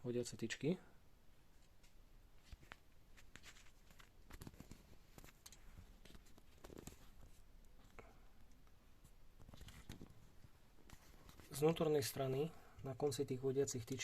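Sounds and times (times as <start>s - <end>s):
soft handling scrapes: 1.5s - 8.0s, 9.0s - 12.6s.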